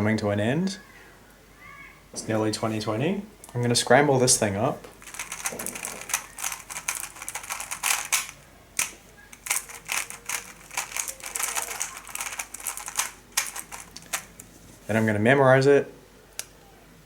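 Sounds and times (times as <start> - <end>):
puzzle cube clicking: 5.0 - 14.5.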